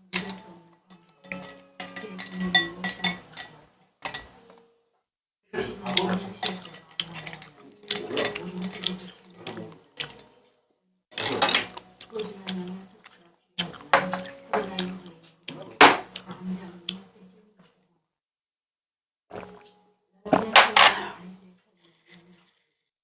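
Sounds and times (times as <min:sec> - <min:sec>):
dishes and cutlery clinking: 0:00.2 - 0:00.5, 0:01.1 - 0:04.7, 0:05.7 - 0:10.3, 0:11.1 - 0:12.4, 0:13.6 - 0:16.4, 0:20.3 - 0:21.2.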